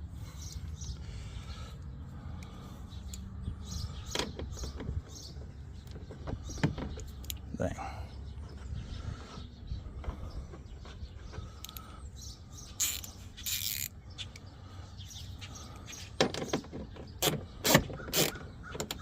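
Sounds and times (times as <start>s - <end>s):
sharp clicks and knocks: 4.0s - 7.5s, 16.2s - 19.0s.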